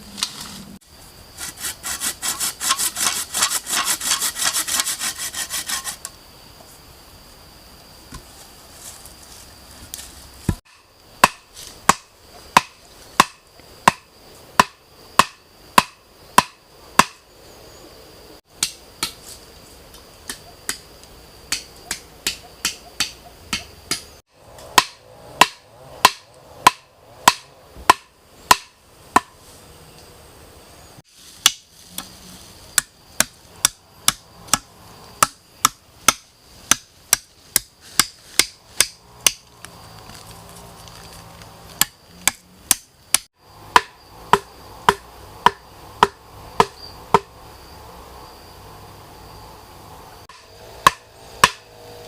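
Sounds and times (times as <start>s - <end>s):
tool striking wood: 10.5s - 17.2s, 21.5s - 29.4s, 31.4s - 31.6s, 32.8s - 39.5s, 41.8s - 47.3s, 50.3s - 51.7s.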